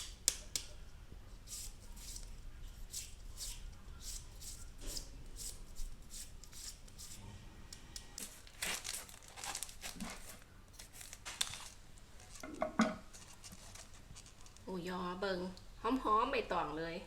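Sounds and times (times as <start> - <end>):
leaf wrapping torn and crumpled: 8.2 - 12.5.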